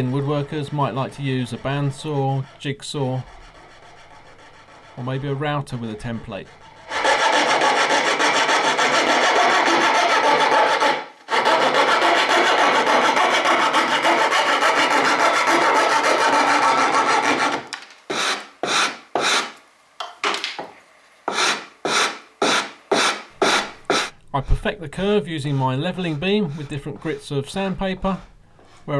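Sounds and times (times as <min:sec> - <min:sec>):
coping saw rasping through wood: 0:00.0 - 0:19.6, 0:21.3 - 0:24.1.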